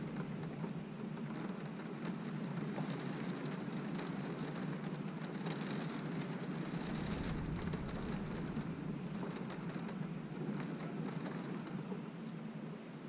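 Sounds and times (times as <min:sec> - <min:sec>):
low rumble of wind: 0:00.0 - 0:13.0
rain beating on a window: 0:00.0 - 0:13.0.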